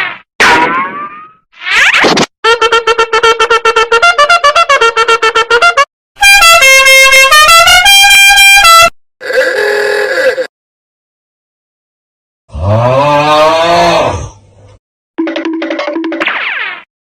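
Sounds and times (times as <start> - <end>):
blaring horn-like tune: 2.5 - 9.0.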